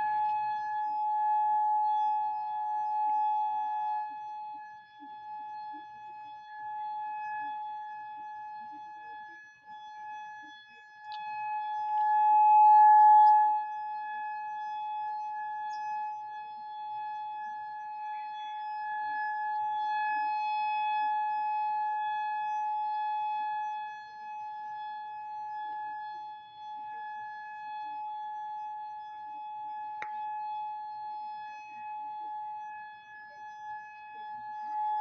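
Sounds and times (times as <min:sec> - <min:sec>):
warning siren steady tone: 0:00.0 - 0:35.0.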